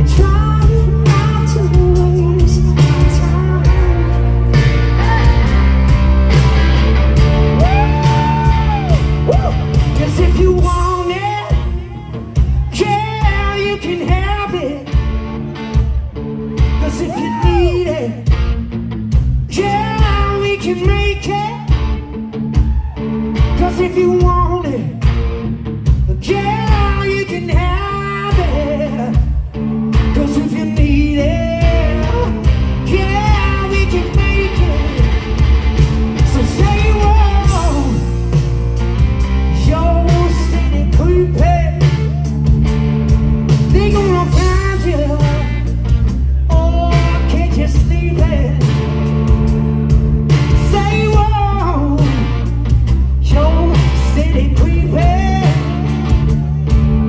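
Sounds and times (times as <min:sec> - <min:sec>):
rock band with singer: 0:00.0 - 0:57.0.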